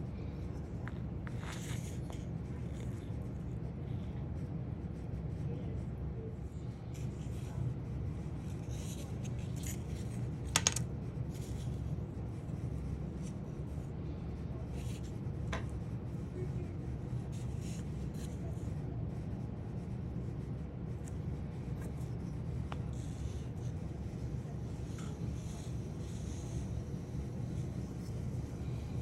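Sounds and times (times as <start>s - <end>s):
steady low hum: 0.0s - 29.0s
wood and tools handled on workbench: 10.5s - 10.8s.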